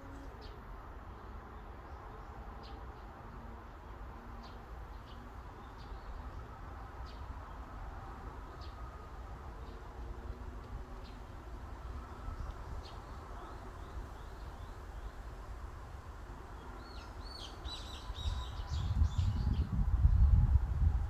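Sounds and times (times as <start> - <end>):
low wind rumble: 15.7 - 21.0.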